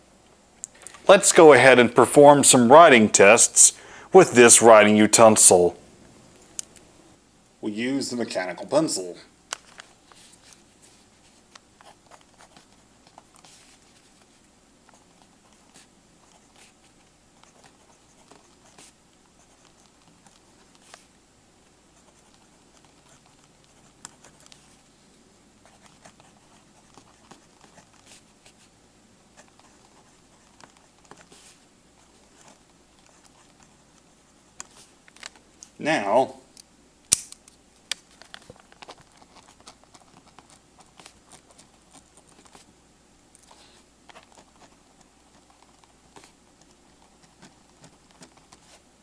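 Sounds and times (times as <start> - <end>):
pencil scratching on paper: 14.9 - 21.1, 21.9 - 24.8, 25.6 - 28.7, 29.4 - 34.9, 43.5 - 48.9.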